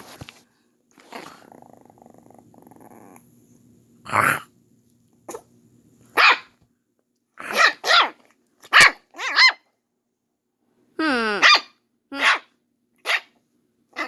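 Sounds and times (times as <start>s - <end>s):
dog barking: 6.1s - 6.5s, 7.4s - 9.6s, 11.4s - 13.3s.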